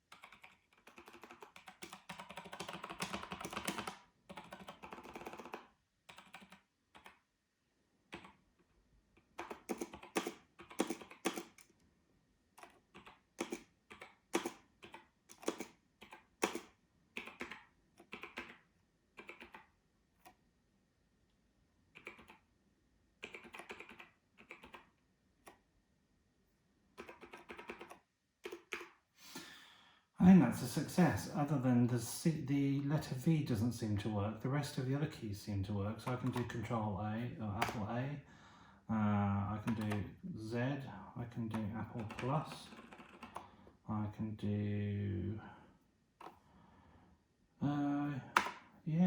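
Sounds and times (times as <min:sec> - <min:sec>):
keyboard keystrokes: 0:00.1 - 0:07.2, 0:09.3 - 0:11.7, 0:12.6 - 0:18.6, 0:19.2 - 0:20.4, 0:22.0 - 0:22.4, 0:23.2 - 0:25.6, 0:27.0 - 0:29.0, 0:36.0 - 0:36.7, 0:37.6 - 0:37.9, 0:39.6 - 0:40.1, 0:41.5 - 0:43.5.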